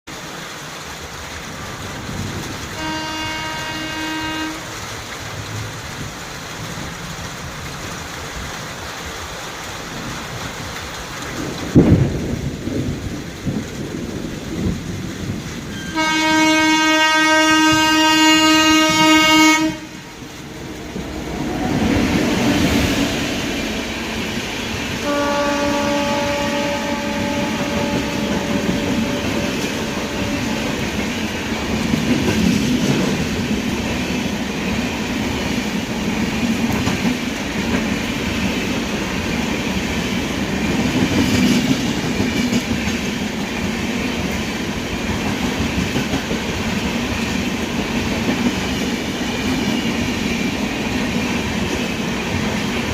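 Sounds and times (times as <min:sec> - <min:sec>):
train rumbling and clattering: 0:00.1 - 0:52.9
train horn blasts: 0:02.7 - 0:04.8, 0:15.7 - 0:20.3, 0:25.0 - 0:31.2.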